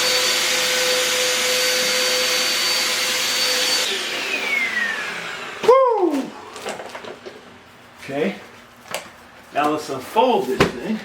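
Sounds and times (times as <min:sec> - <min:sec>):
electric fan motor whining: 0:00.0 - 0:06.4.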